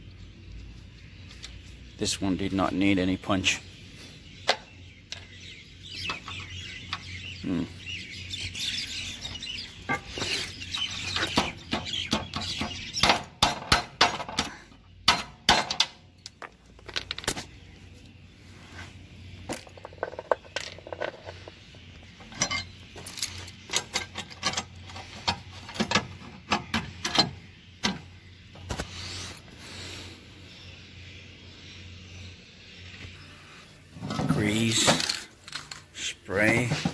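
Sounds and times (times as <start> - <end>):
hand tools clinking on metal: 22.2 - 26.0.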